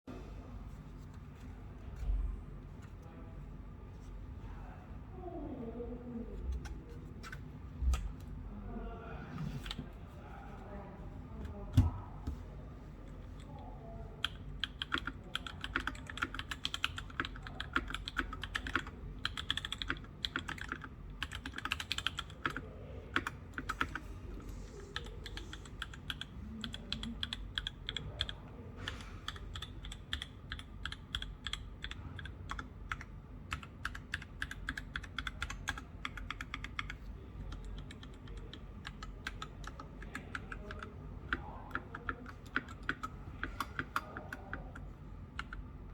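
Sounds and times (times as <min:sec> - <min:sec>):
faint low hum: 0:00.1 - 0:45.9
mechanical keyboard typing: 0:14.2 - 0:24.1, 0:25.0 - 0:28.4, 0:29.3 - 0:45.6.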